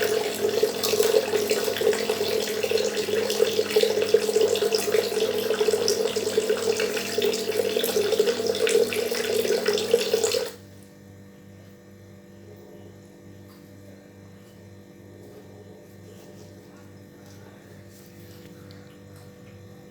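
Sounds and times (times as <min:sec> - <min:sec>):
faint steady hum: 0:00.0 - 0:10.6
water running into kettle: 0:00.0 - 0:10.6.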